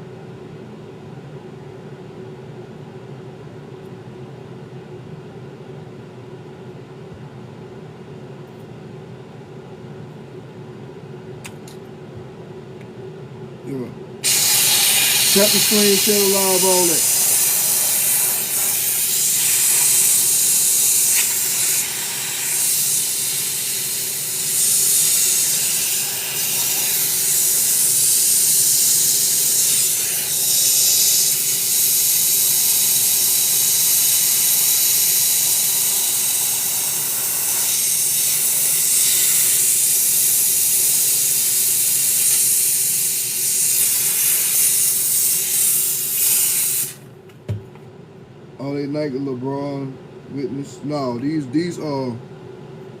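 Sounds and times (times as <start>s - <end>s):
air blower hissing: 13.7s - 47.6s.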